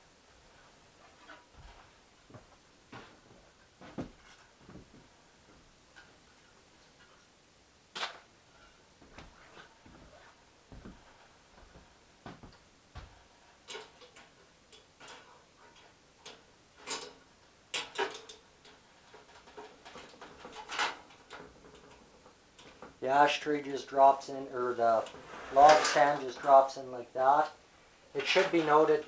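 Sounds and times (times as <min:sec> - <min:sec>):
stove parts clicking and knocking: 0:13.5 - 0:23.0.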